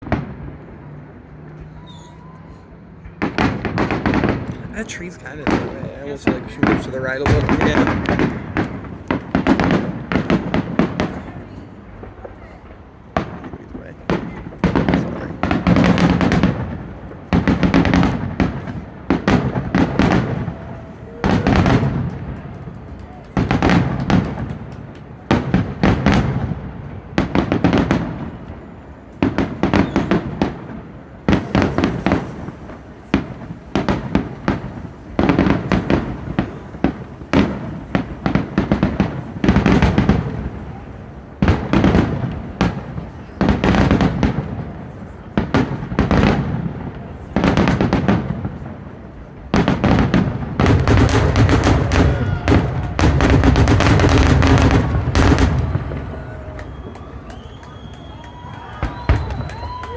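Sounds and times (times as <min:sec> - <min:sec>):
fireworks bangs and crackles: 0:00.0 - 0:59.9.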